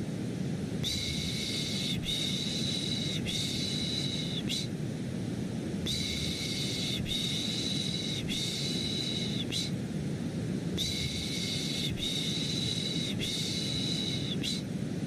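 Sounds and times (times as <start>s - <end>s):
low white-noise rumble: 0.0s - 15.0s
person shushing: 0.8s - 4.7s, 5.9s - 9.8s, 10.8s - 14.7s.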